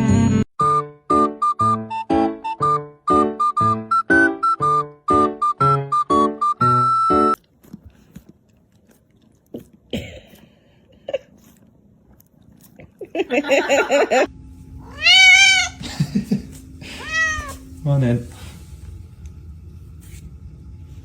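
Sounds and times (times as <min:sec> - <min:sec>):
whistle-like music: 0:00.0 - 0:07.4
cat meowing: 0:14.8 - 0:15.8, 0:16.9 - 0:17.6.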